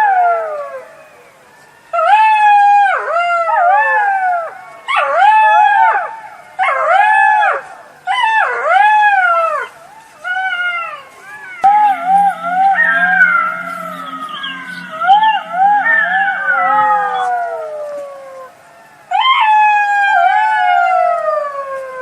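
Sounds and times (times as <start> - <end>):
jackal howling: 10.2 - 21.6.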